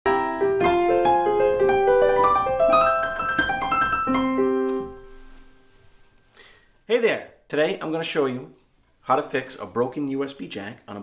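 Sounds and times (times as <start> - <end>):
piano playing single notes: 0.1 - 6.2.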